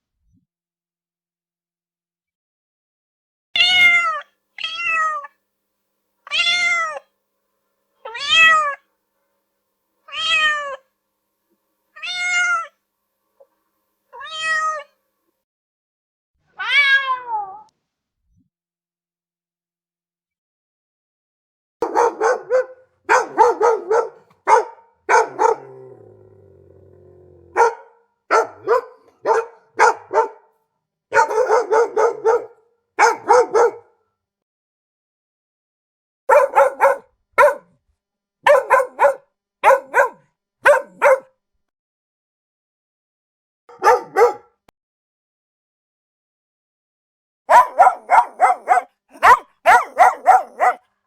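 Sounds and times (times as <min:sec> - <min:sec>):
dog barking: 0:21.8 - 0:26.0, 0:27.5 - 0:34.0, 0:36.3 - 0:37.8, 0:38.4 - 0:41.3, 0:43.7 - 0:44.6, 0:47.5 - 0:50.9.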